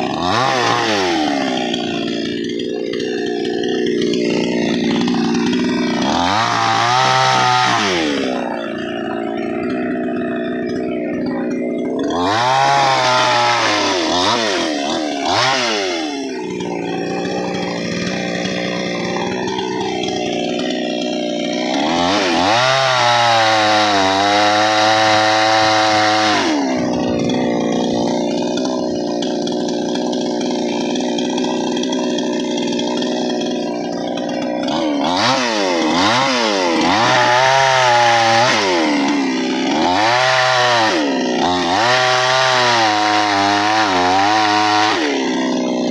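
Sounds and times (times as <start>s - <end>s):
chainsaw engine revving: 0.0s - 45.9s.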